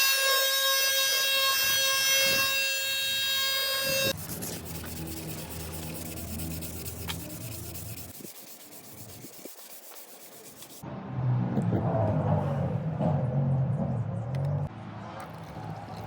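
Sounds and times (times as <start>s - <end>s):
sandpaper rubbing on wood: 4.0s - 10.8s.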